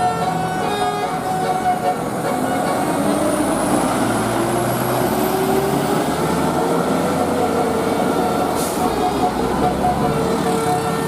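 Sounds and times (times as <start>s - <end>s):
horn tones: 0.0s - 3.4s
buses passing: 0.0s - 11.0s.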